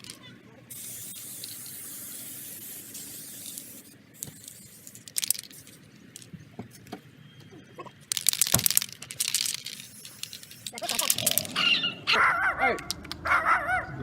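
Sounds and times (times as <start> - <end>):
aerosol can spraying: 0.7 - 5.8, 8.3 - 11.6
small clicks: 8.1 - 11.6, 12.8 - 13.2.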